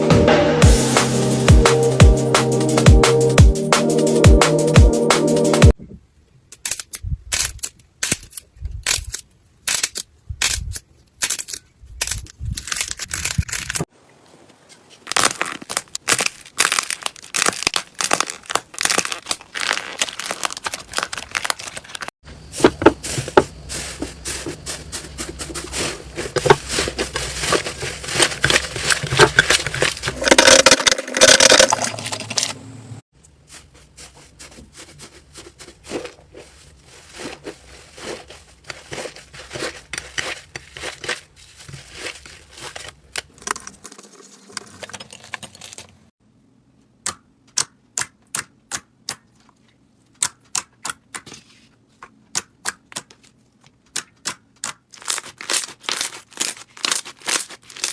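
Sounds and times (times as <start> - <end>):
slime crackling and popping: 15.1 - 22.1.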